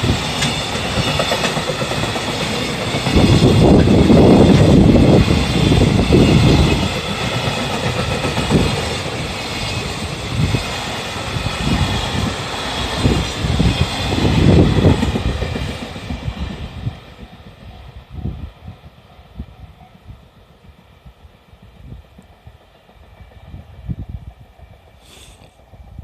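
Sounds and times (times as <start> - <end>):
train wheels clattering over rail joints: 0.0 - 16.3.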